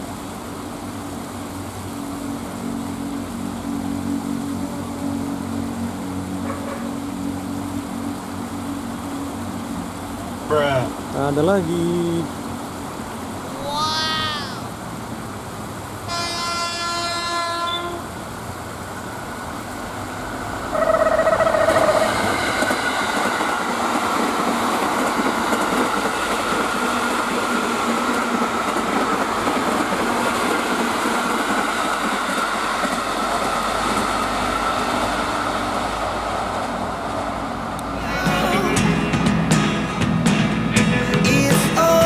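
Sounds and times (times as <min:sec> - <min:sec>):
train rumble and wheel noise: 0:00.0 - 0:42.0
train horn: 0:04.5 - 0:07.3, 0:16.1 - 0:18.2, 0:20.7 - 0:23.7.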